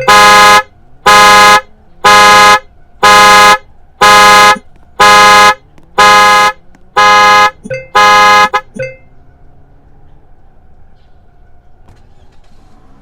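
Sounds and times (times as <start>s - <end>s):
car horn honking: 0.0s - 9.5s.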